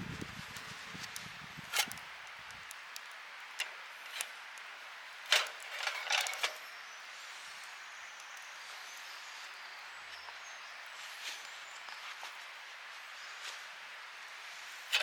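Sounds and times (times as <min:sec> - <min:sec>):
fire snaps and pops: 0:00.0 - 0:06.8, 0:07.4 - 0:08.6
campfire crackling: 0:00.0 - 0:15.0.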